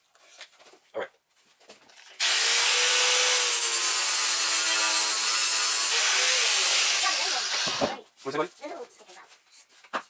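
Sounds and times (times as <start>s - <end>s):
angle grinder grinding steel: 2.2s - 7.9s.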